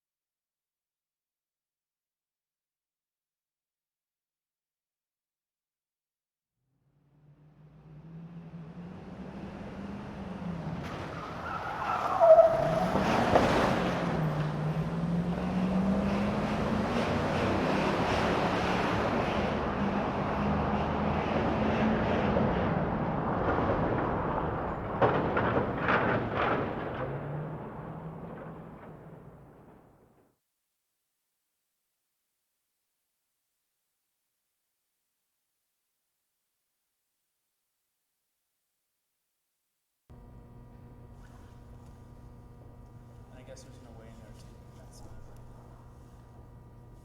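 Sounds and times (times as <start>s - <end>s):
truck engine driving: 7.6s - 30.0s, 40.1s - 47.0s
tyre squeal: 10.8s - 13.6s.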